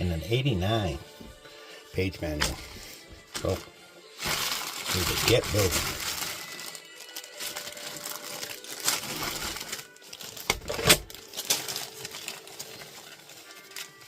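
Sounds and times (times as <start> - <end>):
plastic bag crinkling: 4.2 - 14.0
small plastic pieces clattering: 4.2 - 14.0.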